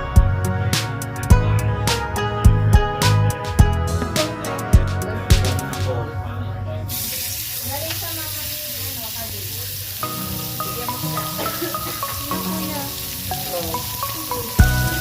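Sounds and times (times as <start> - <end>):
background music held notes: 0.0 - 6.9, 10.0 - 15.0
steak sizzling on grill pan: 6.9 - 15.0.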